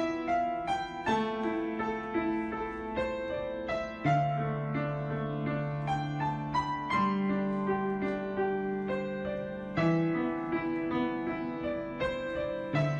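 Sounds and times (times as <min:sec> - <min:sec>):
slow gentle piano music: 0:00.0 - 0:12.9.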